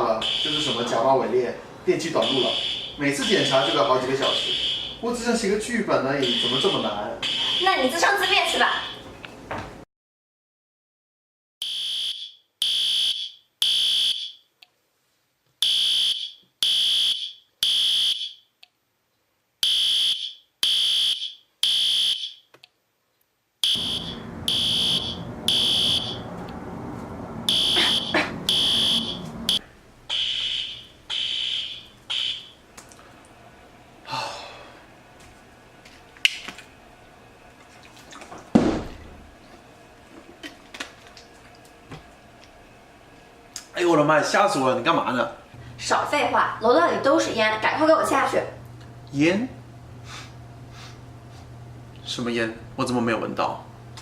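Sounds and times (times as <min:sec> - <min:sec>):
fire alarm beeping: 0:00.2 - 0:01.0, 0:02.2 - 0:05.0, 0:06.2 - 0:09.0, 0:11.6 - 0:14.4, 0:15.6 - 0:18.4, 0:19.6 - 0:22.4, 0:23.6 - 0:26.3, 0:27.5 - 0:32.6.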